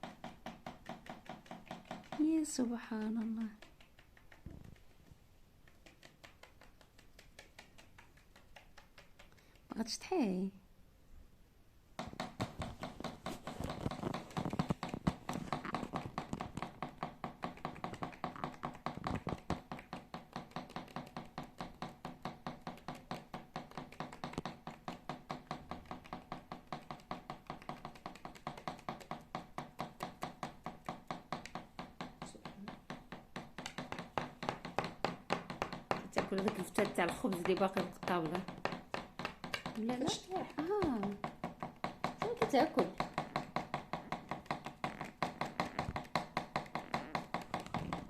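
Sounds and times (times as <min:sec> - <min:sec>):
bird pecking at a tabletop: 0:00.0 - 0:09.8, 0:12.0 - 0:48.0.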